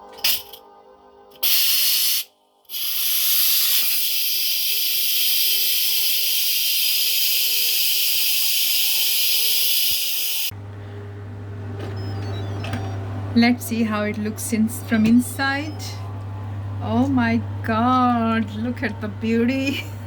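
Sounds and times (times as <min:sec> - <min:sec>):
steam valve hissing: 0:01.4 - 0:10.5.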